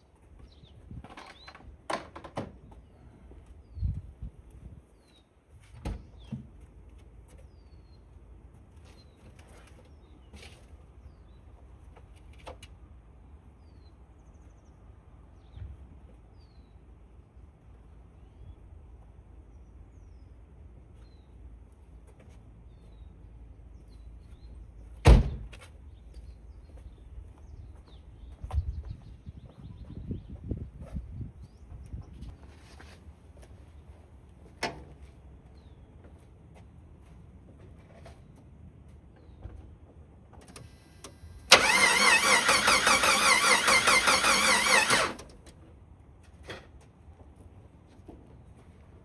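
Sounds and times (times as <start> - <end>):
engine cranking on starter: 40.6 - 45.4.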